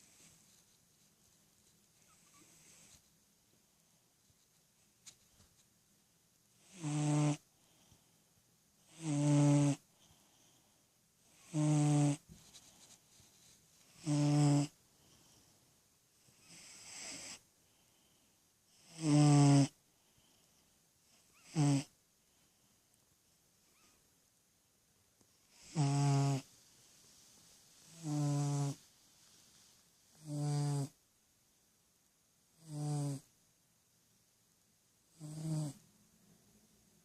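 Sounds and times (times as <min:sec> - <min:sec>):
cat snoring: 0:00.0 - 0:00.6, 0:02.0 - 0:03.0, 0:06.6 - 0:08.0, 0:08.8 - 0:12.3, 0:13.9 - 0:15.4, 0:16.2 - 0:18.1, 0:18.7 - 0:20.4, 0:21.1 - 0:22.0, 0:25.5 - 0:26.5, 0:27.9 - 0:28.8, 0:30.1 - 0:31.0, 0:32.6 - 0:33.3, 0:35.1 - 0:35.8.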